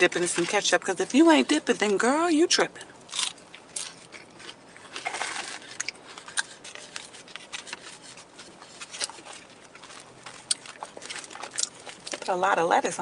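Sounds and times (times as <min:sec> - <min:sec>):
chewing and crunching food: 0:02.8 - 0:12.6.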